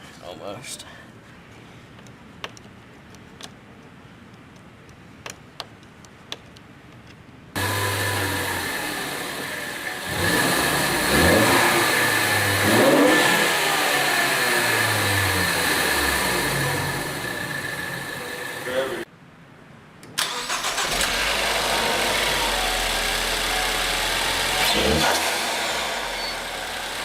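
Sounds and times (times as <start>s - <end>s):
car engine revving: 7.6s - 19.0s, 20.2s - 27.0s
steady high whine: 21.0s - 27.0s.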